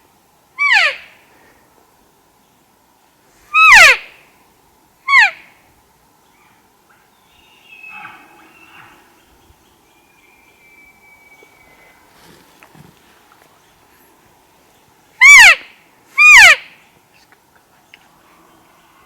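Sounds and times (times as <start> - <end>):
faint elk calls: 6.4 - 9.2
thin steady high whistle: 10.0 - 12.0.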